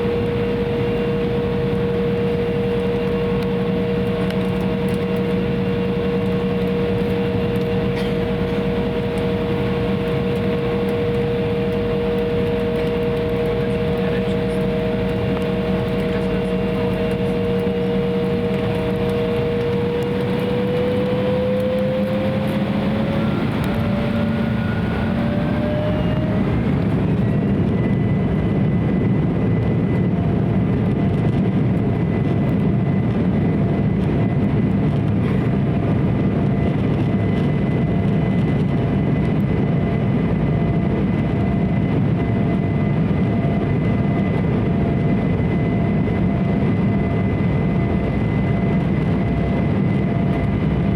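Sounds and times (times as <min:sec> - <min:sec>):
takeoff run rumble: 0:00.0 - 0:28.0
jet engines whine: 0:00.0 - 0:50.9.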